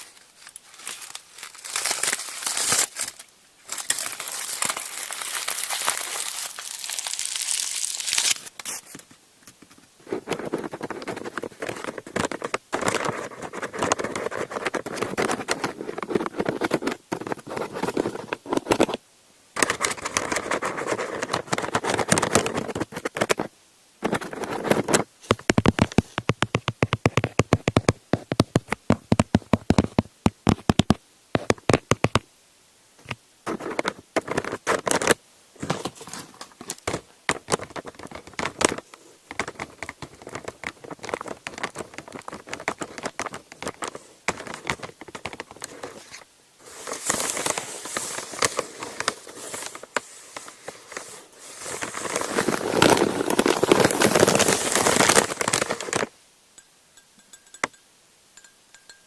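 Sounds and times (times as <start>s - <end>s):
plastic wrap crinkling: 0.0s - 9.1s, 10.1s - 19.0s, 33.5s - 56.1s.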